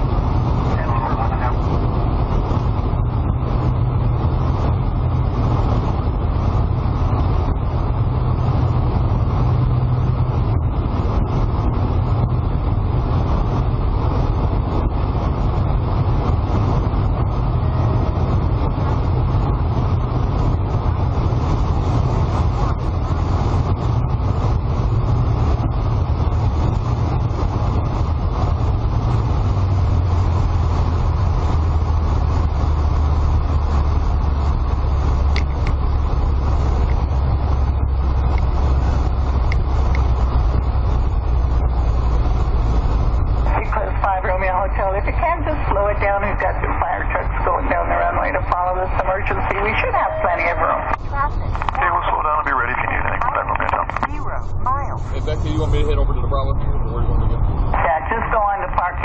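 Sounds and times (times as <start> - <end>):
aircraft piston engine drone: 0.0 - 59.0
loud rushing wind: 0.0 - 59.0.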